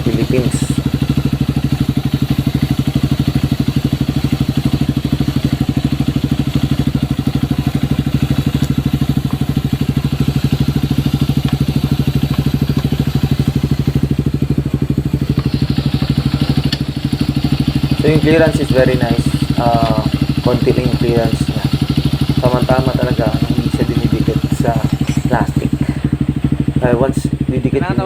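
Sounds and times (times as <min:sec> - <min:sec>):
motorcycle engine idling: 0:00.0 - 0:28.0.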